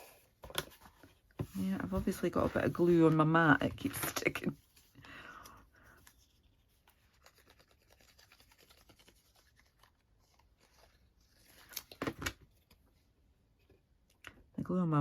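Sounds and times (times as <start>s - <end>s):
paper rustling: 0.0s - 5.0s, 5.9s - 12.8s.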